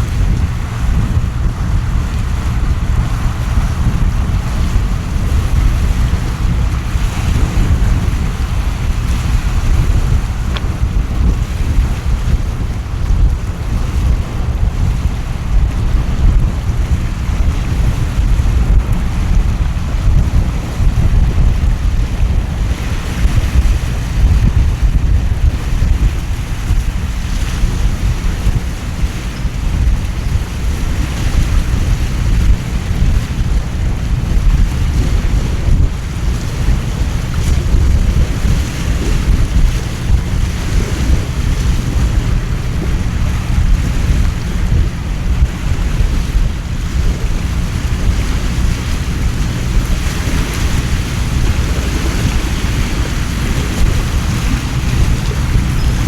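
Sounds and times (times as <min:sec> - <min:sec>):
heavy rain over water: 0:00.0 - 0:56.0
storm wind: 0:00.0 - 0:56.0
wind buffeting microphone: 0:00.0 - 0:56.0.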